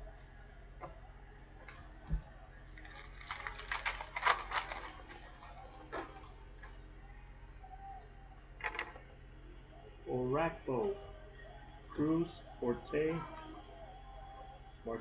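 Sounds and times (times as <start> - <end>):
card packaging clicks and rustles: 2.6 - 6.4.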